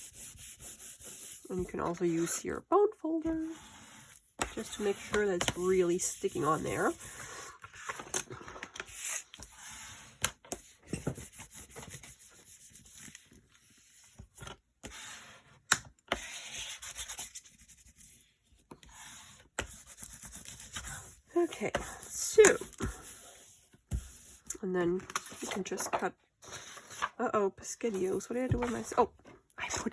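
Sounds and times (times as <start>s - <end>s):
bone folder scraping paper: 0.0s - 2.4s, 3.3s - 14.2s.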